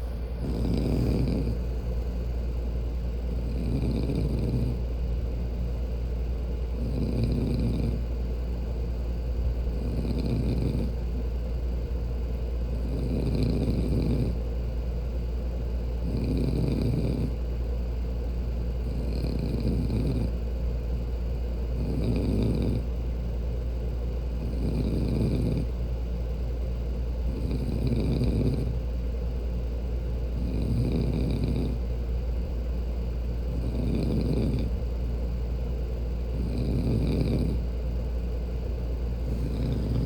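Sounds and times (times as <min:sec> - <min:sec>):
woman snoring: 0:00.0 - 0:01.7, 0:03.3 - 0:04.8, 0:06.8 - 0:08.0, 0:09.8 - 0:11.0, 0:12.7 - 0:14.4, 0:16.0 - 0:17.4, 0:18.9 - 0:20.3, 0:21.8 - 0:22.9, 0:24.4 - 0:25.7, 0:27.3 - 0:28.7, 0:30.4 - 0:31.8, 0:33.5 - 0:34.8, 0:36.3 - 0:37.6, 0:39.2 - 0:40.0
steady low hum: 0:00.0 - 0:40.0.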